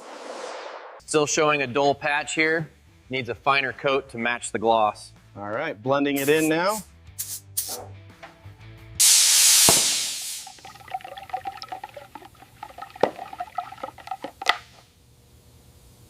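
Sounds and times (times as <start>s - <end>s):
paint spray gun hissing: 6.2s - 7.8s, 9.0s - 10.6s.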